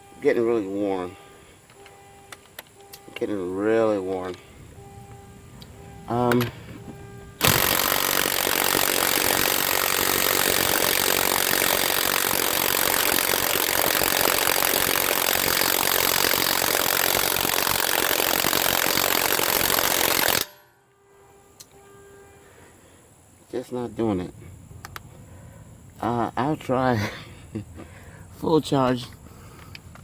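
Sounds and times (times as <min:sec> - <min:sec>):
impact wrench hammering: 0:07.4 - 0:20.7.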